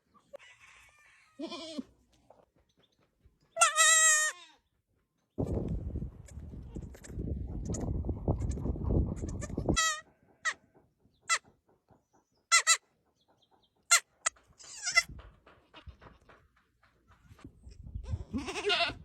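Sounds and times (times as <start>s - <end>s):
baby goats bleating: 1.3s - 1.9s, 3.6s - 4.6s, 9.2s - 10.6s, 12.5s - 12.8s, 14.6s - 15.1s, 18.1s - 19.0s.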